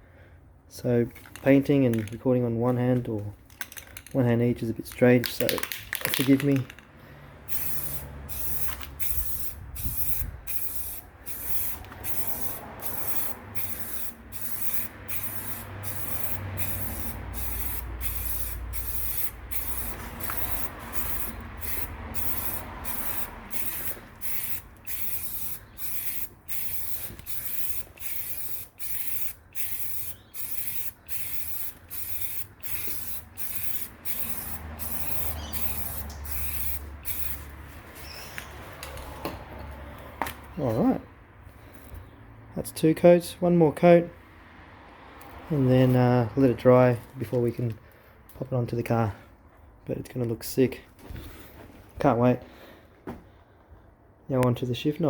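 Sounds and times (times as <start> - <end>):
aerosol spray can bursts: 7.5 - 37.5.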